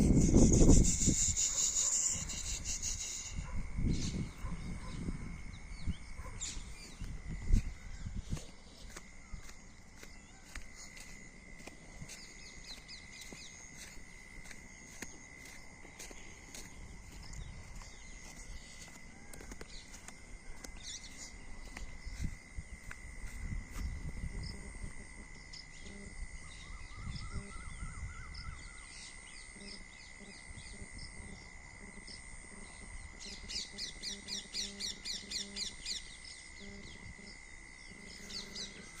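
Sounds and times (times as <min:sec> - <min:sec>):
birds calling: 0:00.0 - 0:23.0, 0:25.5 - 0:39.0
low wind rumbles: 0:03.4 - 0:25.4.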